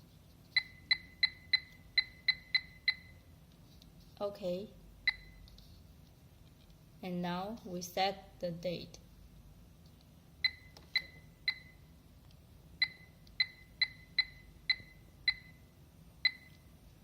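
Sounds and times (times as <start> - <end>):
alarm clock short beeps: 0.6 - 3.2, 5.1 - 5.4, 10.4 - 11.9, 12.8 - 16.6.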